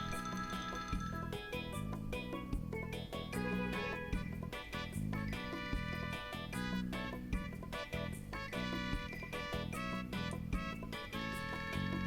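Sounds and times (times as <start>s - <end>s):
instrumental music with beat: 0.0s - 12.0s.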